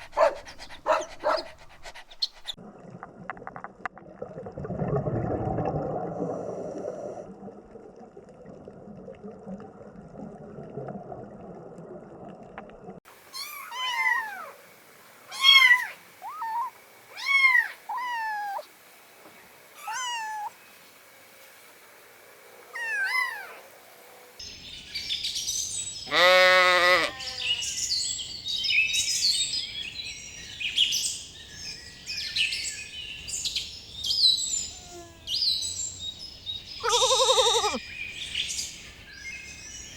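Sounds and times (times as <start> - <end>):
birds chirping: 0.0 - 2.6, 34.4 - 39.9
dog panting: 0.0 - 2.6
drawn-out animal call: 0.0 - 2.6, 36.8 - 37.8
cat meowing: 15.3 - 18.7, 19.8 - 20.5, 36.8 - 37.8.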